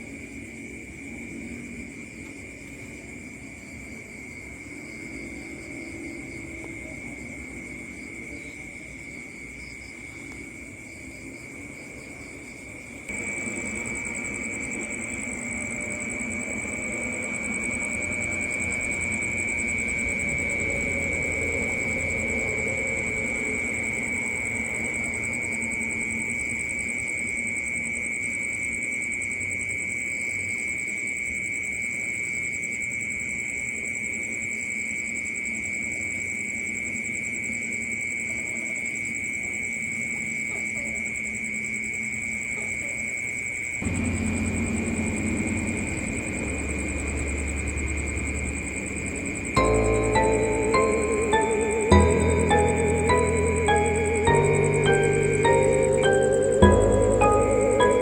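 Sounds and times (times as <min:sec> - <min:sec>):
crickets trilling: 0:00.0 - 0:58.0
low rumbling drone: 0:13.1 - 0:26.0, 0:43.8 - 0:58.0.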